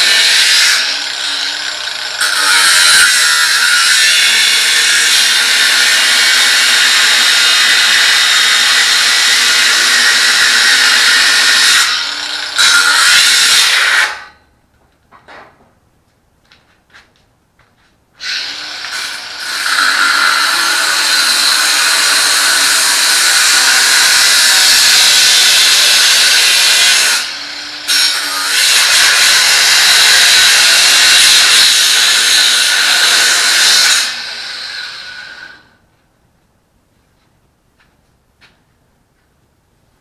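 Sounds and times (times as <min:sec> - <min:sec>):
angle grinder cutting steel: 0:00.0 - 0:14.4, 0:18.2 - 0:35.8.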